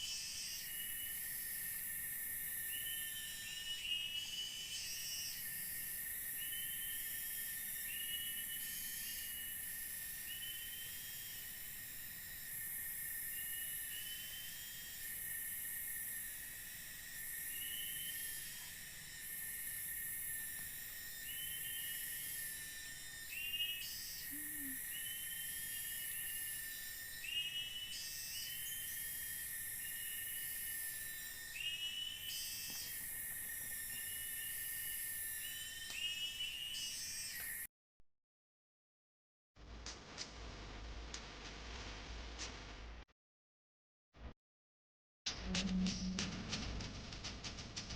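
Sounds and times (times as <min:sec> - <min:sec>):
insect drone: 0:00.0 - 0:37.7, 0:45.3 - 0:47.9
short rising insect chirps: 0:02.6 - 0:37.7.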